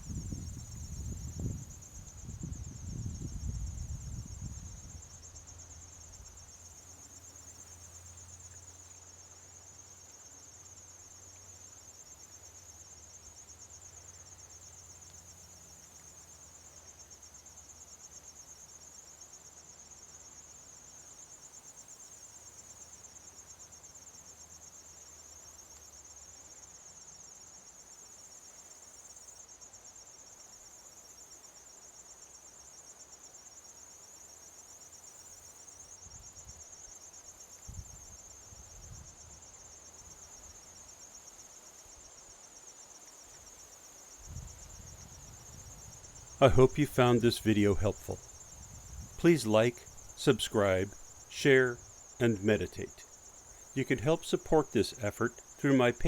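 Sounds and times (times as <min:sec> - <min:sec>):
insect chorus trilling: 0:00.0 - 0:46.4.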